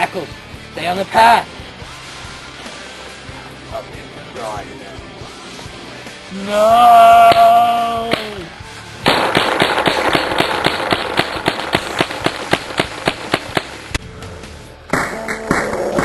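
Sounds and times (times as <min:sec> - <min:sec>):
rapid gunfire: 0:09.0 - 0:14.0.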